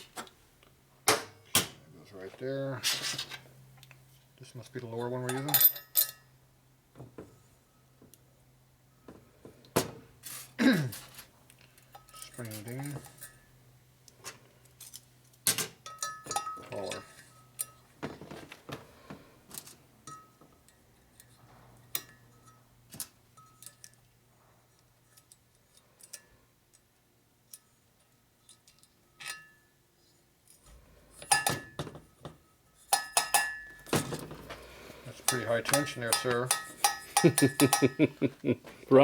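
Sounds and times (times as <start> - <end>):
metal springs and tools clinking: 2.8 - 3.4, 5.2 - 6.3, 10.2 - 13.5, 14.2 - 17.9, 19.5 - 24.1, 32.7 - 38.0.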